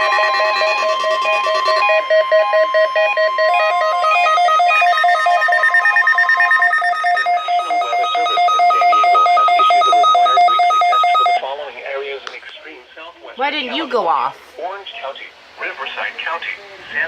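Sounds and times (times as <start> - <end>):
steady alert tone: 0.0 - 11.4
rapid electronic alarm beeping: 0.0 - 11.5.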